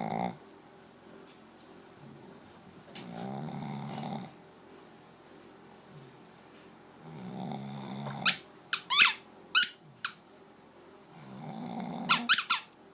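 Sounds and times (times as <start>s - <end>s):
dog snoring: 0.0s - 0.4s, 3.0s - 4.4s, 7.0s - 8.4s, 11.1s - 12.3s
squeaky dog ball squeaking: 8.2s - 10.2s, 12.1s - 12.7s.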